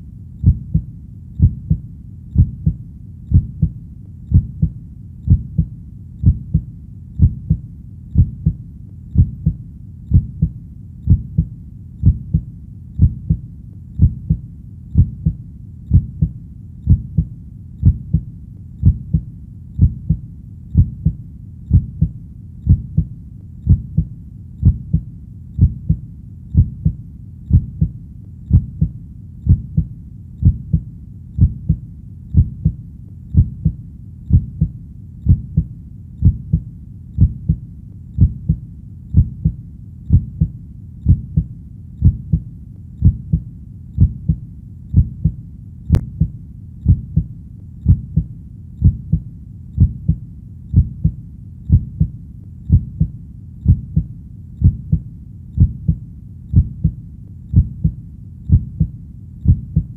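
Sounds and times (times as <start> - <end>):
heartbeat double thump: 0.4 - 1.8, 2.4 - 8.6, 9.2 - 13.4, 14.0 - 14.4, 15.0 - 20.2, 20.8 - 23.1, 23.7 - 26.0, 26.6 - 27.9, 28.5 - 28.9, 29.5 - 30.8, 31.4 - 31.8, 32.4 - 32.8, 33.4 - 34.7, 35.3 - 36.6, 38.2 - 38.6, 39.2 - 40.5, 41.1 - 42.4, 43.0 - 43.4, 44.0 - 49.2, 49.8 - 52.1, 52.7 - 55.0, 55.6 - 59.9.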